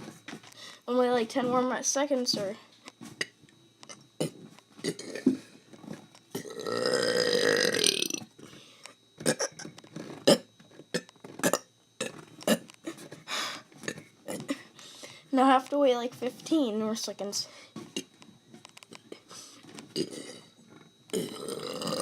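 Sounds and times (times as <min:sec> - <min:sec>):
person burping: 0:03.2 - 0:05.5, 0:06.3 - 0:08.3, 0:09.2 - 0:13.0, 0:13.8 - 0:14.7, 0:19.9 - 0:22.0.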